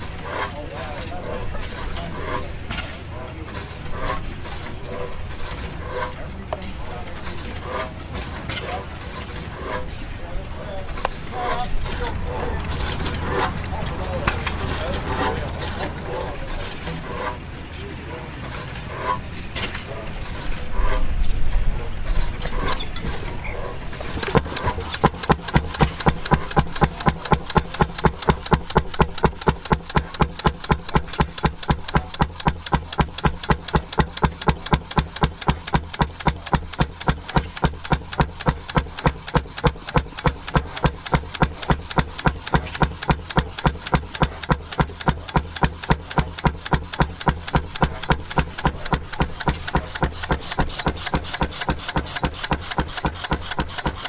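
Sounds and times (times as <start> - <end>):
antique engine running: 23.9 - 54.0.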